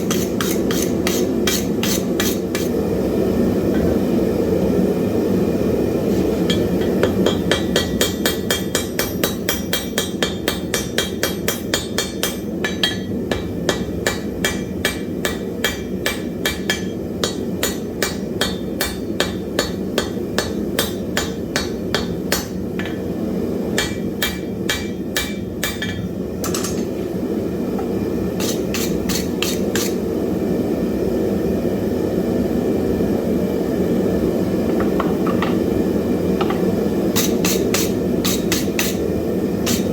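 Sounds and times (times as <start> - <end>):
hammer striking iron on anvil: 0.0 - 2.7, 6.5 - 26.9, 27.8 - 30.0, 36.4 - 39.0, 39.6 - 39.9.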